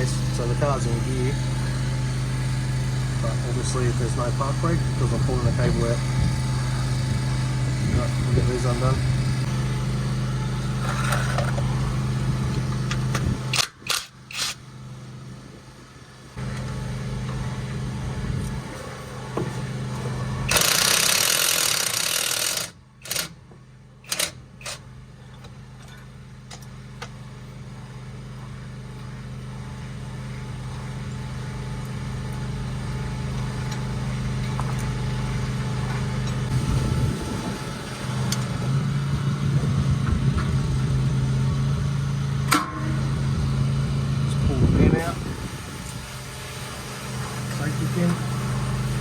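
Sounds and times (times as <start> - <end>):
impact wrench running: 0.0 - 14.8, 16.4 - 27.2
low machine hum: 0.0 - 21.4, 22.8 - 49.0.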